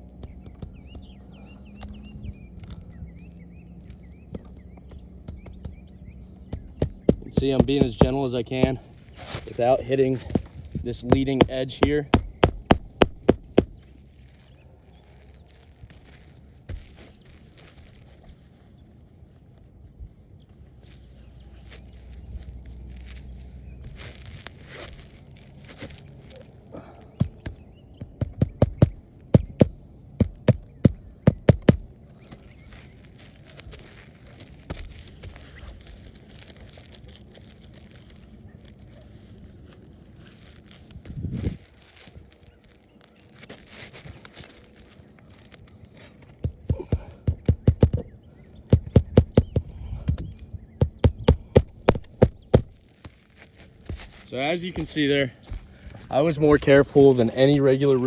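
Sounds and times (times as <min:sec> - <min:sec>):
hammer striking nails: 0:06.8 - 0:08.8, 0:11.0 - 0:13.8, 0:27.2 - 0:31.9, 0:46.5 - 0:48.0, 0:48.7 - 0:52.8.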